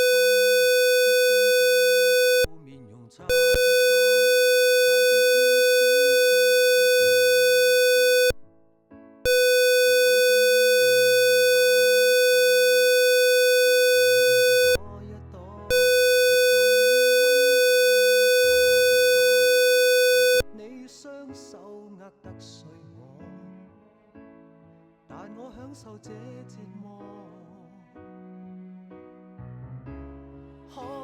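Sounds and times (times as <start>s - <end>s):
electronic alarm buzzer: 0.0s - 2.5s, 3.3s - 8.4s, 9.3s - 14.8s, 15.7s - 20.4s.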